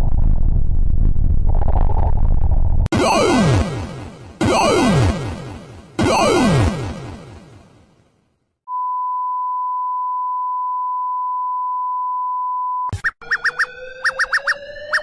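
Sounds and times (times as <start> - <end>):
steady electronic tone: 2.9 - 7.6.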